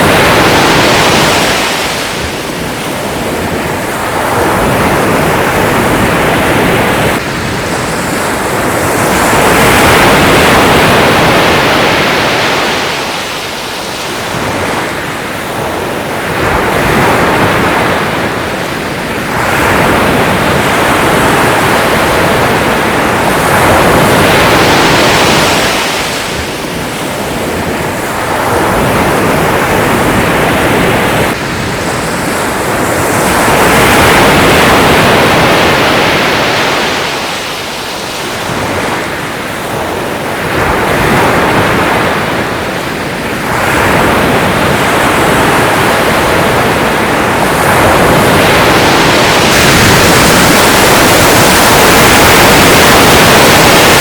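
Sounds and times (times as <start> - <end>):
sea waves breaking on shore: 0.0 - 54.0.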